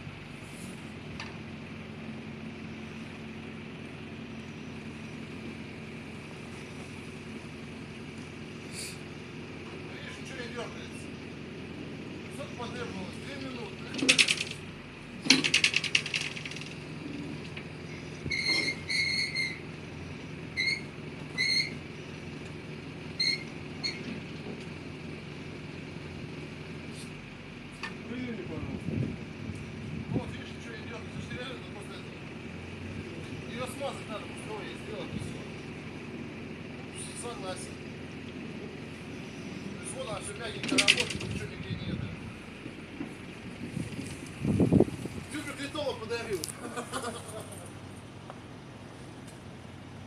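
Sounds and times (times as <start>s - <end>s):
machine engine running: 1.9s - 18.4s
boom joints squeaking: 12.3s - 22.0s, 23.1s - 24.7s, 38.6s - 46.6s
boom pivot squeaking: 18.2s - 19.7s, 20.6s - 21.8s, 23.2s - 24.2s.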